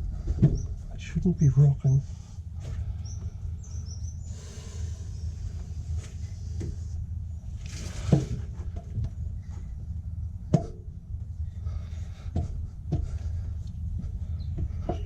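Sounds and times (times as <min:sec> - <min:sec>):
steady low hum: 0:00.0 - 0:15.0
metal knocks and clunks: 0:14.5 - 0:15.0.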